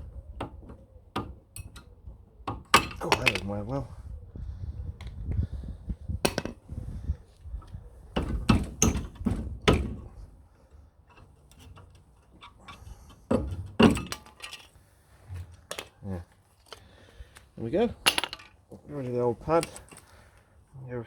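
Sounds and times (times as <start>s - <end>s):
metallic knocks and clicks of brake pad: 8.2s - 10.1s.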